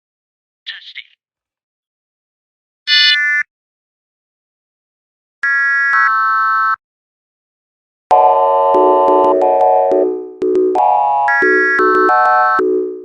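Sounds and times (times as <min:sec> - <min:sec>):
electronic synthesizer music: 0:08.1 - 0:13.0.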